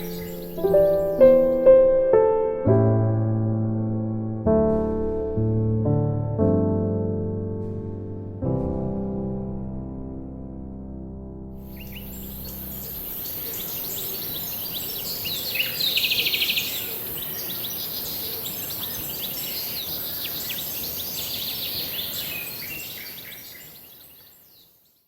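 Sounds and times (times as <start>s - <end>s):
loud rapid bird trill: 0.0s - 1.7s, 11.7s - 24.8s
steady high hiss: 0.0s - 1.9s, 11.6s - 23.8s
songbirds chirping: 0.0s - 2.4s, 11.6s - 25.0s.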